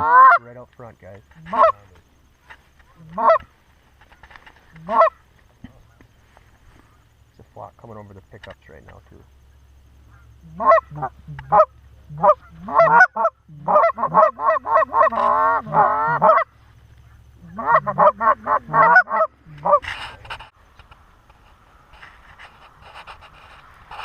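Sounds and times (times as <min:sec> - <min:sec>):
goose honking and clucking: 0:00.0 - 0:00.4, 0:01.3 - 0:01.9, 0:02.8 - 0:03.5, 0:04.7 - 0:05.2, 0:10.1 - 0:20.5
brief rustle: 0:03.8 - 0:04.9, 0:19.8 - 0:24.0.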